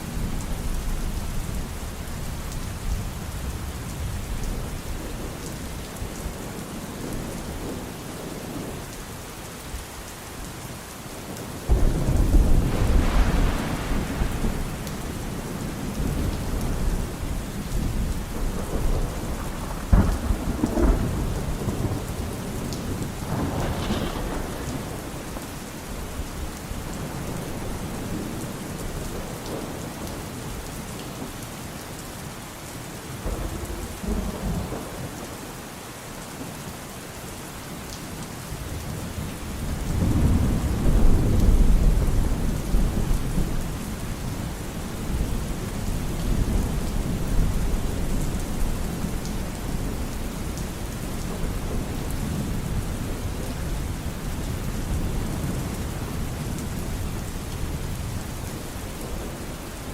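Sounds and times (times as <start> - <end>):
steady rain: 0.0 - 59.9
thunder rumbling: 11.7 - 30.6, 33.2 - 35.4, 39.6 - 59.9.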